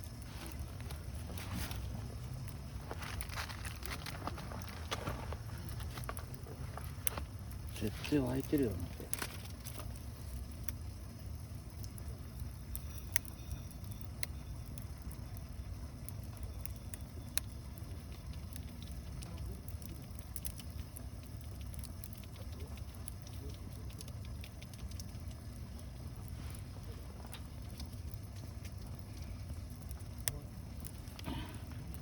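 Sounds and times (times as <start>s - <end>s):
burning wood crackling: 0.0s - 32.0s
water boiling: 0.0s - 32.0s.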